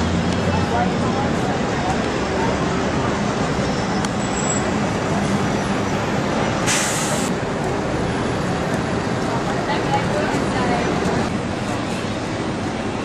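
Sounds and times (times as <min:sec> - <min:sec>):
street traffic noise: 0:00.0 - 0:13.0
short hiss: 0:06.7 - 0:07.3.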